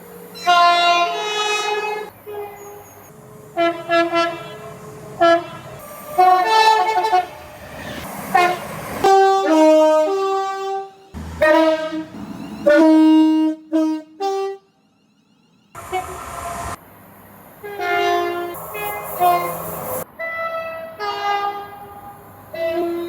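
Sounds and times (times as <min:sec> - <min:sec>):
train horn blasts: 0:00.0 - 0:16.8, 0:17.6 - 0:23.0.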